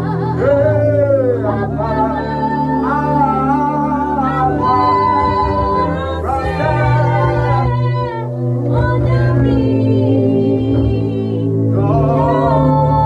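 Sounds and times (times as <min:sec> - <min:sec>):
held low chords: 0:00.0 - 0:13.0
person singing slow melody: 0:00.0 - 0:13.0.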